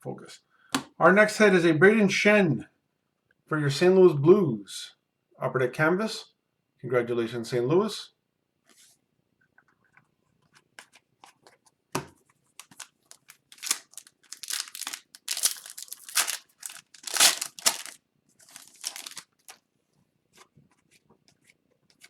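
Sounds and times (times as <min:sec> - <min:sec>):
foil wrappers tearing and crinkling: 0:12.6 - 0:19.6.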